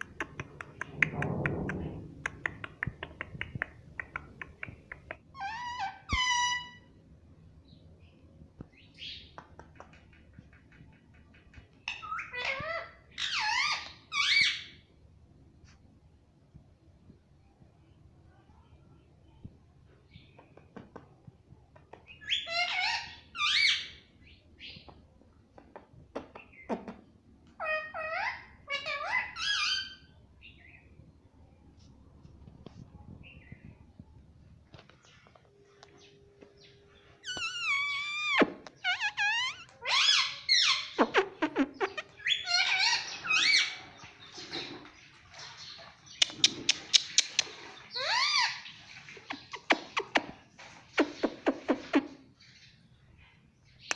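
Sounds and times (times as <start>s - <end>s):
parakeet squawking and chattering: 2.3s - 6.9s, 11.8s - 14.8s, 22.1s - 24.0s, 27.6s - 30.1s, 37.2s - 44.8s, 46.2s - 50.3s
parrot chirps and calls: 2.4s - 7.0s, 11.6s - 14.9s, 22.0s - 24.9s, 27.5s - 30.8s, 36.6s - 44.8s, 45.6s - 50.3s.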